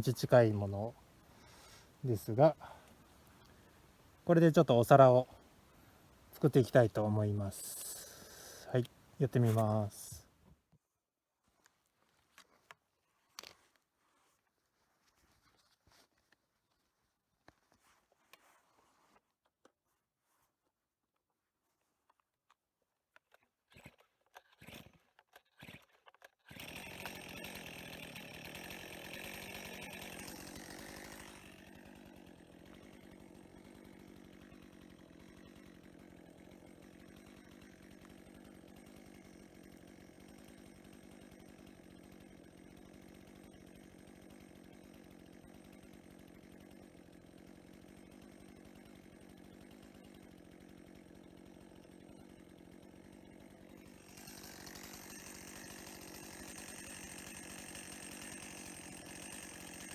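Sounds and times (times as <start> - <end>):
chainsaw engine running: 6.4 - 10.3, 23.7 - 59.9.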